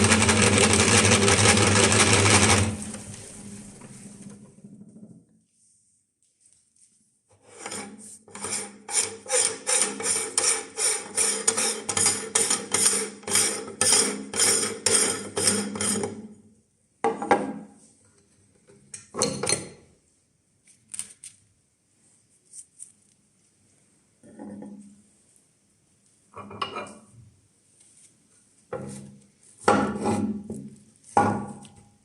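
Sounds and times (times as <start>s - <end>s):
wafers crunching in meat grinder: 0.0s - 2.9s.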